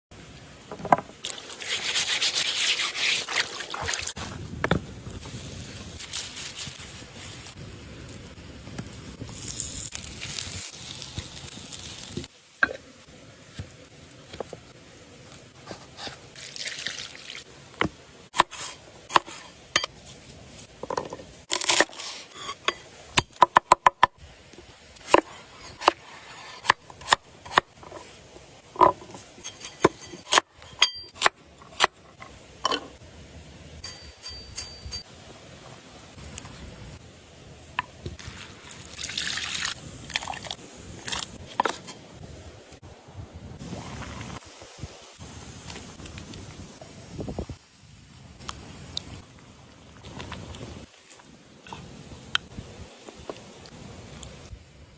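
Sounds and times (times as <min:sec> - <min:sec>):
cookware and utensils clinking: 0:33.8 - 0:35.1.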